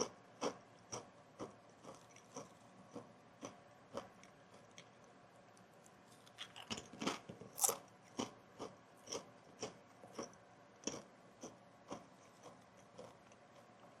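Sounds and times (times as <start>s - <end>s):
crunchy chip chewing: 5.8s - 10.3s
loud crunching bites: 6.3s - 7.8s.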